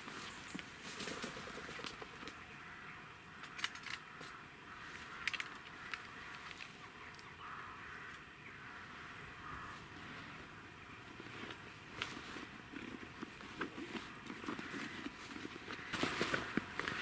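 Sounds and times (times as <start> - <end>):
faint outdoor background noise: 0.0 - 17.0
brief clicks and rustles: 3.4 - 4.0.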